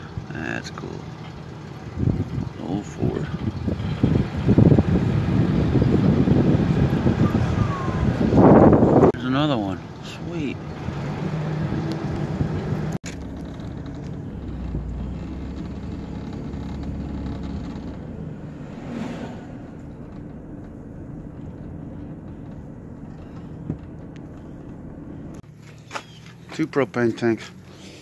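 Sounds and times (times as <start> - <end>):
motor vehicle running: 0.0 - 28.0.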